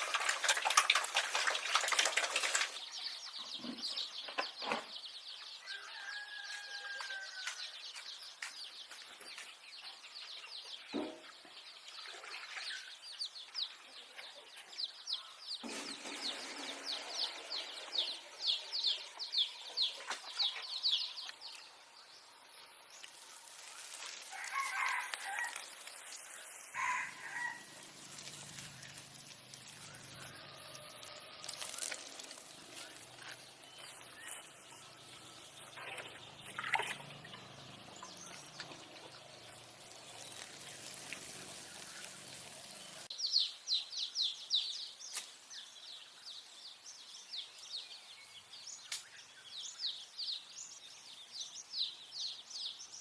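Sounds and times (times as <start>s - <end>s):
rooster crowing: 5.6s - 7.8s, 24.3s - 25.8s, 26.7s - 27.9s, 29.8s - 31.8s
chickens calling: 15.6s - 21.6s, 23.2s - 43.1s.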